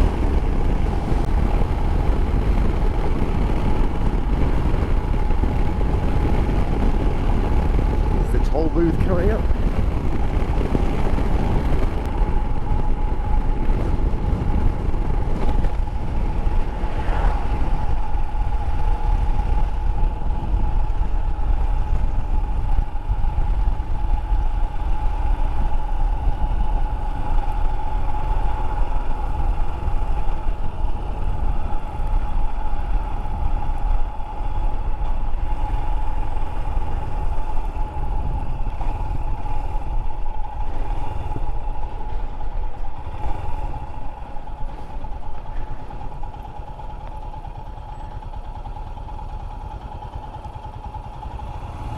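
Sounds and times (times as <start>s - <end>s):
motorcycle engine running: 0.0s - 51.9s
wind rumble on microphone: 0.0s - 51.9s.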